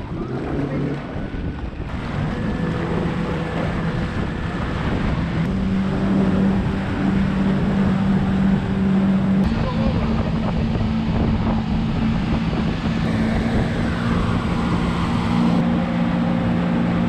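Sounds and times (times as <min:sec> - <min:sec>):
boat engine running: 0:00.0 - 0:17.0
rushing water noise: 0:00.0 - 0:17.0.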